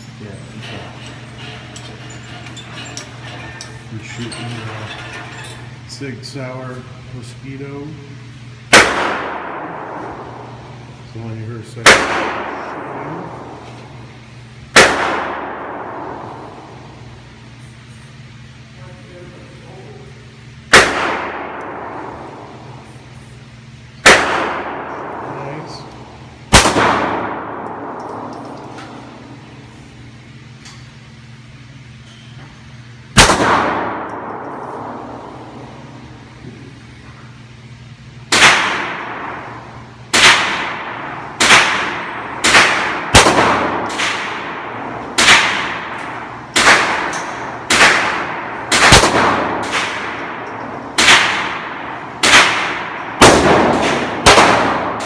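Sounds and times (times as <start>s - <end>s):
pistol shots with echo: 8.7s - 10.5s, 11.8s - 13.6s, 14.7s - 16.5s, 20.7s - 22.8s, 24.0s - 29.1s, 33.2s - 35.6s, 38.3s - 55.0s.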